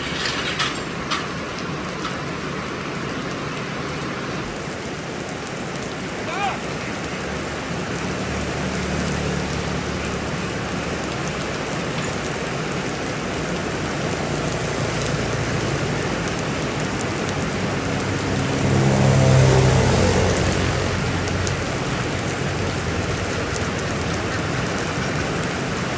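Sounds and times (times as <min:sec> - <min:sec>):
heavy rain pouring: 0:00.0 - 0:25.9.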